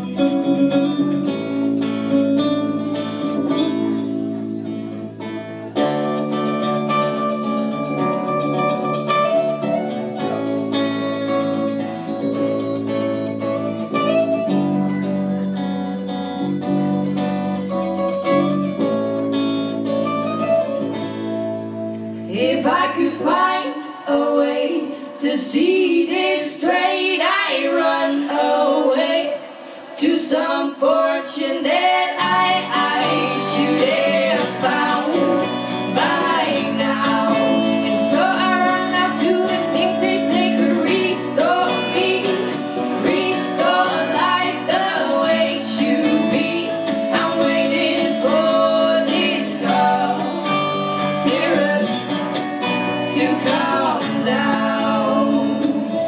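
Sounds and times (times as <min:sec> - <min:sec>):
instrumental backing: 0:00.0 - 0:23.6, 0:32.0 - 0:56.0
female voices singing: 0:22.2 - 0:56.0.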